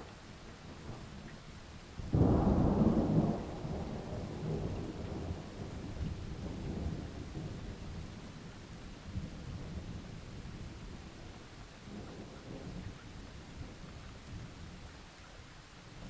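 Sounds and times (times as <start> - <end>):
steady rain: 0.0 - 16.0
thunder clap and rumble: 2.1 - 8.1.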